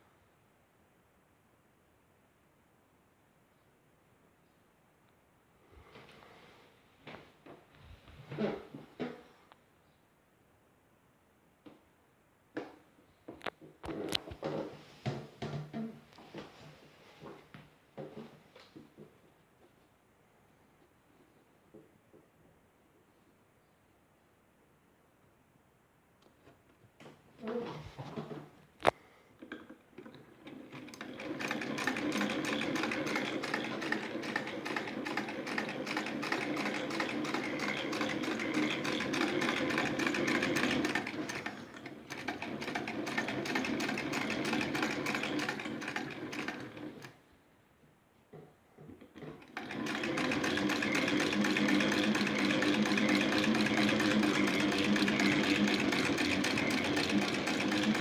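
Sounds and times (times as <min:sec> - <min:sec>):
sewing machine clatter: 0:29.5 - 0:47.2, 0:49.0 - 0:58.0.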